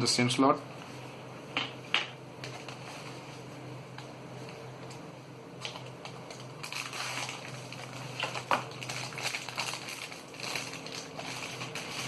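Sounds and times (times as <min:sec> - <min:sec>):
steady low hum: 0:00.0 - 0:12.0
packaging rustling: 0:05.7 - 0:12.0.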